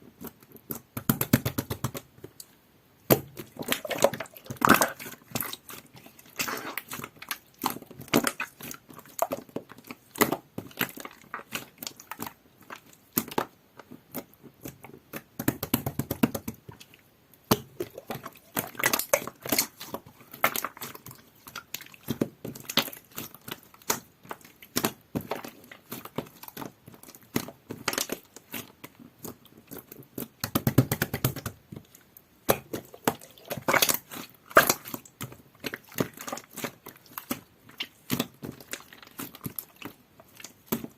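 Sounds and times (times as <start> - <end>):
slime squelching: 0.1 - 40.9
slime squishing and clicking: 0.2 - 40.9.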